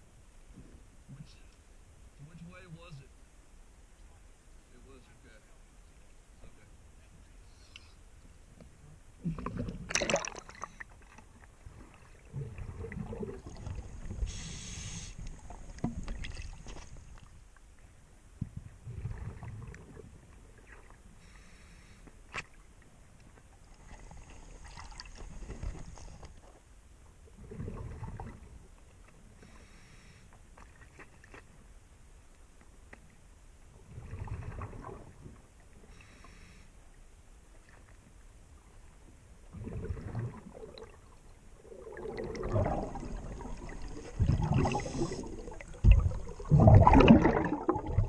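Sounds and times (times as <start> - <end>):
exhaled bubbles rumbling: 9.2 - 17.3, 18.5 - 21.0, 27.2 - 28.7, 33.8 - 35.4, 39.4 - 48.0
diver breathing through regulator: 14.2 - 15.3, 21.2 - 22.0, 29.4 - 30.3, 35.9 - 36.7, 44.6 - 45.6.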